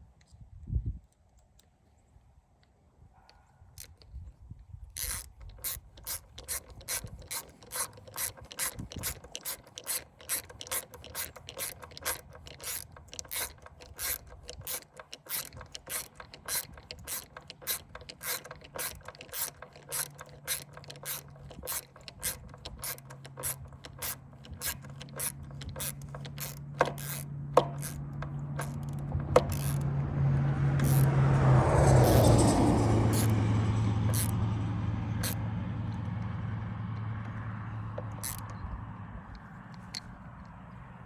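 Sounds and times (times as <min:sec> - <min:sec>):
ratcheting screwdriver clicking: 0:03.8 - 0:04.2, 0:04.9 - 0:29.9, 0:30.8 - 0:31.1, 0:31.8 - 0:33.4, 0:34.1 - 0:34.4, 0:35.2 - 0:36.3, 0:37.2 - 0:38.6, 0:39.3 - 0:40.6.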